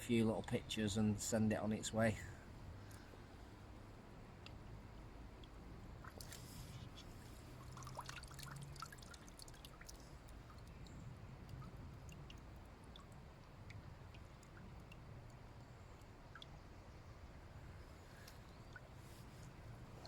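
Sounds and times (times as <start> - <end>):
faint dripping and trickling water: 0.0 - 20.0.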